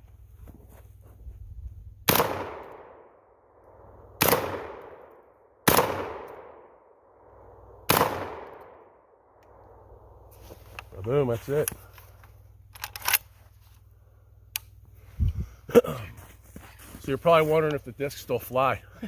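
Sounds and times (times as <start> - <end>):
shotgun shots echoing: 2.1 - 3.1, 4.2 - 6.8, 7.9 - 9.0.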